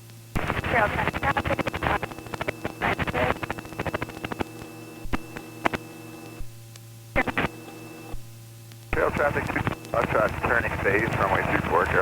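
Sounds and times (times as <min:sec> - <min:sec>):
crackling static clicks: 0:00.0 - 0:12.0
helicopter hum: 0:00.4 - 0:05.9, 0:08.9 - 0:12.0.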